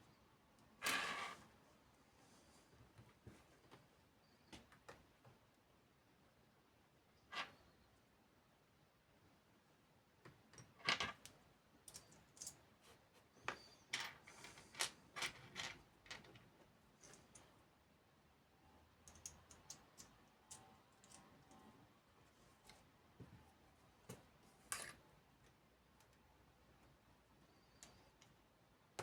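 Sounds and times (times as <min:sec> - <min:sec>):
small repair tools clicking: 0:19.0 - 0:21.3.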